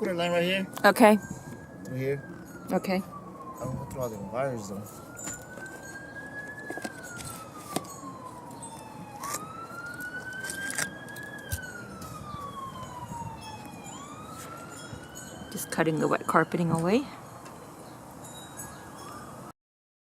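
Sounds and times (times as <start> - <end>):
siren wailing: 0.0 - 17.8.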